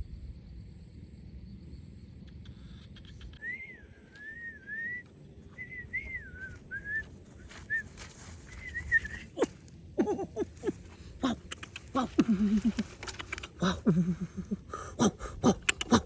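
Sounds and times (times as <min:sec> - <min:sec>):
faint low hum: 0:00.0 - 0:16.0
whistled notes: 0:03.4 - 0:09.3.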